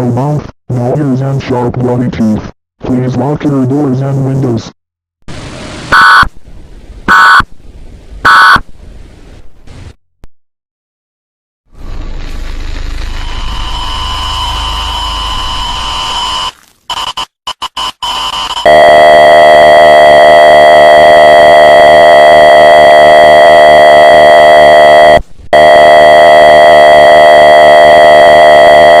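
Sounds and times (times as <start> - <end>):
distorted emergency alert tone: 5.9 - 6.3, 7.1 - 7.4, 8.3 - 8.6, 13.3 - 29.0.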